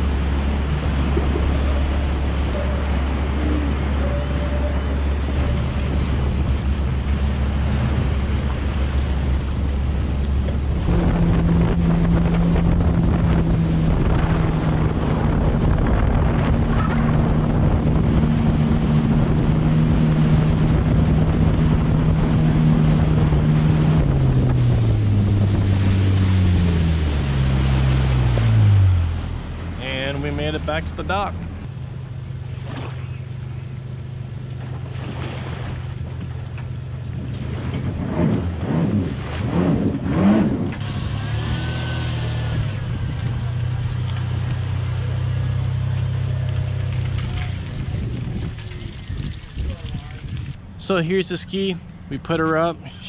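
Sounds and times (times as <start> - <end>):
water rushing past: 0.0 - 31.7, 34.5 - 52.9
watercraft engine running: 0.0 - 53.0
wind on the microphone: 3.4 - 27.0, 47.0 - 50.6.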